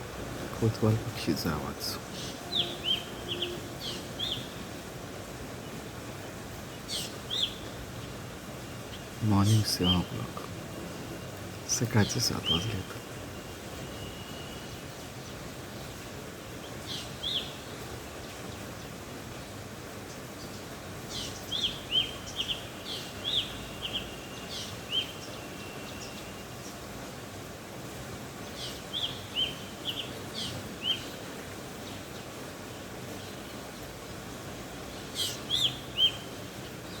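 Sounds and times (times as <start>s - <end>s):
background hiss: 0.0s - 37.0s
bird chirping in bursts: 0.6s - 4.6s, 6.7s - 16.0s, 20.4s - 26.8s, 34.7s - 37.0s.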